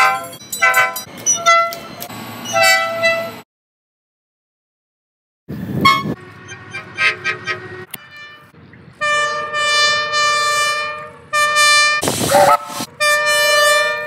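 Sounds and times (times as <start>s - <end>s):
train air horn chord: 8.0s - 14.0s.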